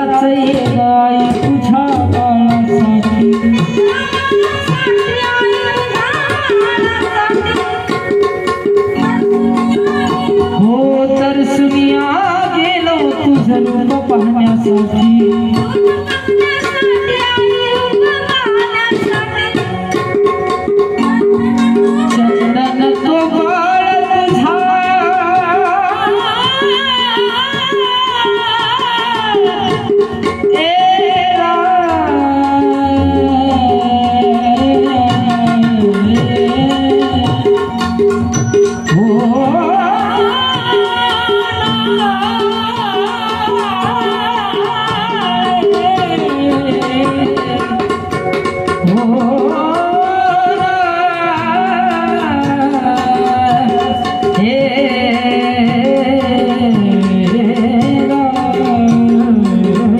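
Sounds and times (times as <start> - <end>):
hand drum beat: 0.0 - 59.9.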